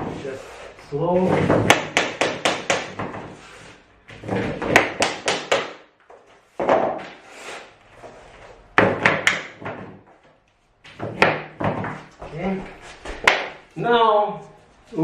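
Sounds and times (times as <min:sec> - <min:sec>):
wooden floor planks knocking: 0:01.1 - 0:03.4, 0:04.1 - 0:07.2, 0:08.7 - 0:13.6.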